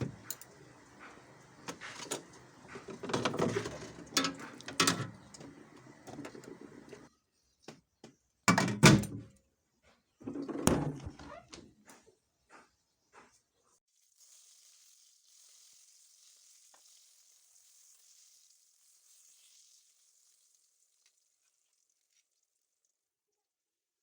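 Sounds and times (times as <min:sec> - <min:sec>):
containers knocking and clattering: 0:00.0 - 0:07.1
refrigerator door opening and shutting: 0:01.6 - 0:07.0, 0:10.2 - 0:11.6.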